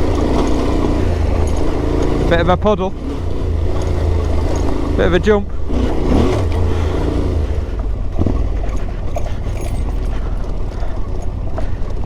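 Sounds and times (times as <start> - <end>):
clicks and knocks over stony ground: 0.0 - 2.4, 3.6 - 5.2, 8.1 - 12.0
motorcycle engine rumbling: 0.0 - 12.0.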